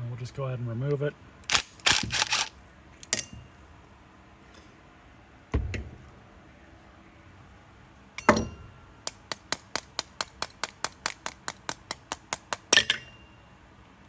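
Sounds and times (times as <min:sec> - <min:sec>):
sharp evenly spaced clicks: 0:01.4 - 0:02.5, 0:09.0 - 0:12.7.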